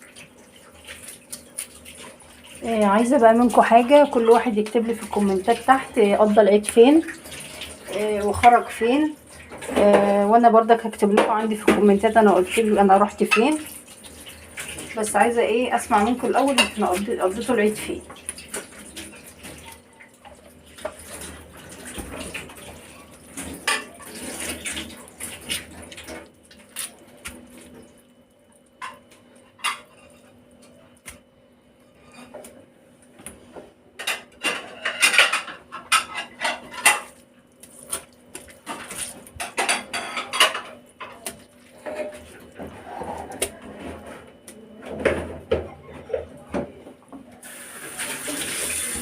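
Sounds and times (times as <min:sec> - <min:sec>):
utensils and dishes clinking: 0:16.0 - 0:26.2, 0:28.8 - 0:30.4, 0:34.0 - 0:37.2, 0:38.7 - 0:46.4.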